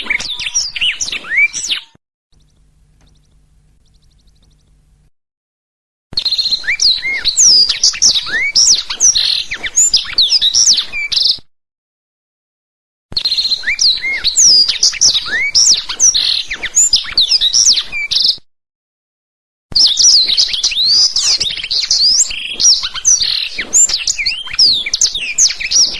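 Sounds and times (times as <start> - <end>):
canary singing: 0.0 - 5.1, 19.9 - 25.9.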